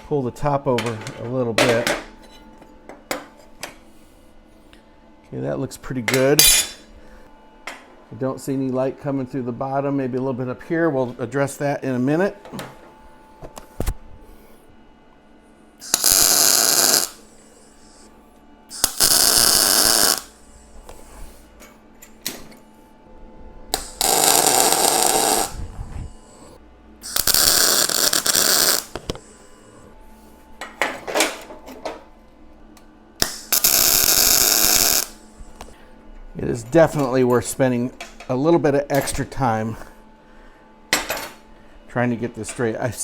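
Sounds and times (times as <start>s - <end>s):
welding arc tack welds: 15.8s - 18.0s, 18.7s - 21.0s, 23.7s - 29.6s, 33.2s - 35.3s.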